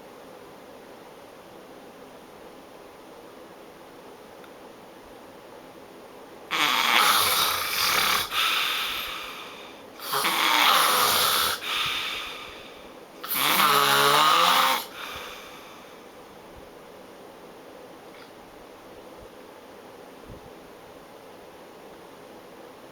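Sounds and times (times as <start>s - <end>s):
person snoring loudly: 6.5s - 15.7s.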